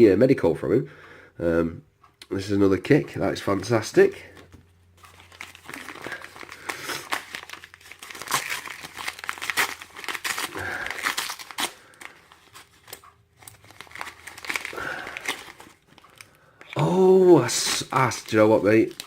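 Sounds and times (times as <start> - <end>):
packaging crinkling and rustling: 4.3 - 19.0.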